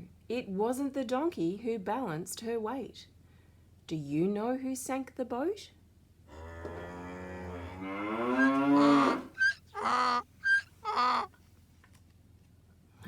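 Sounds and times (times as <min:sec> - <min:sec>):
cow mooing: 0:06.3 - 0:11.3.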